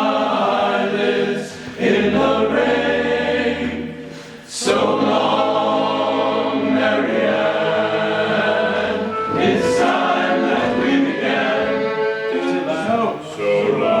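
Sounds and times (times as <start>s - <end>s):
choir singing held chords: 0.0s - 14.0s.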